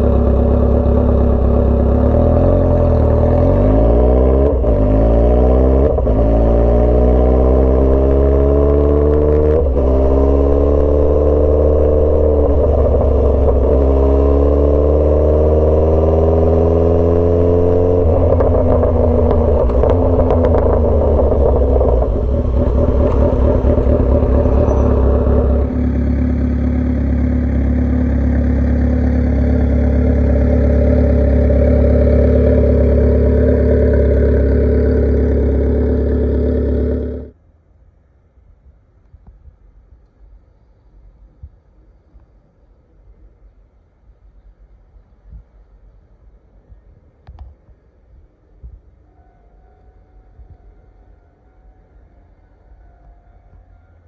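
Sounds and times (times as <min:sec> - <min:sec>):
motorcycle engine accelerating: 0:00.0 - 0:37.4.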